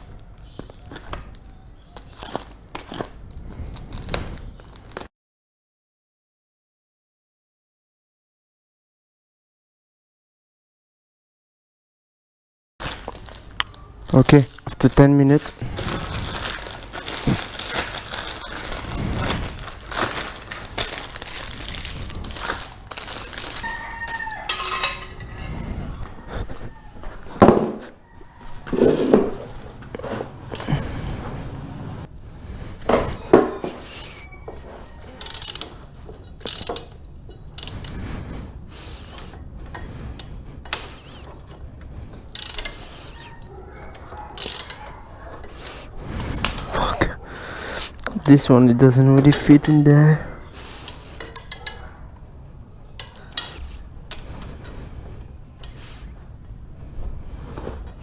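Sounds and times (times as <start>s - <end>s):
hand tools knocking and scraping: 24.4s - 25.5s.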